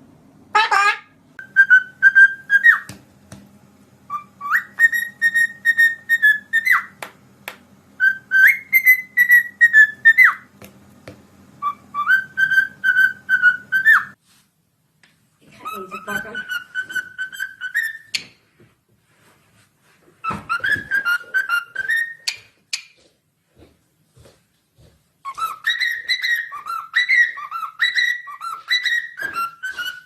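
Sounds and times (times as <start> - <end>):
parrot whistling a tune: 1.4 - 2.9, 4.1 - 7.0, 8.0 - 10.5, 11.6 - 14.2, 15.7 - 18.3, 20.3 - 22.9, 25.3 - 30.0.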